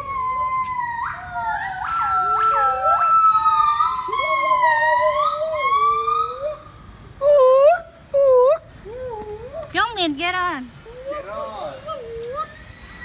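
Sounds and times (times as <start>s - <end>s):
monkeys whistle-like calls: 11.9s - 13.0s.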